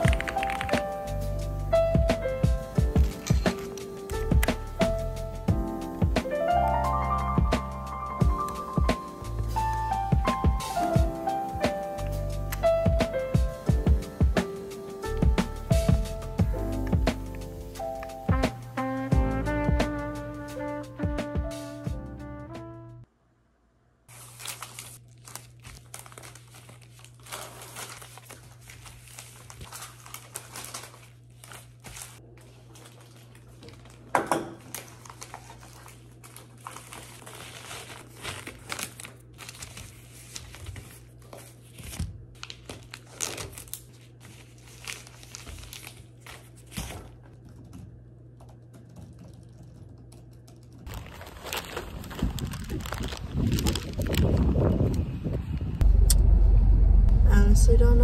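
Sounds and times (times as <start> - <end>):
crinkling and rustling: 24.1 - 48.0, 48.6 - 55.0
steady low hum: 54.6 - 58.0.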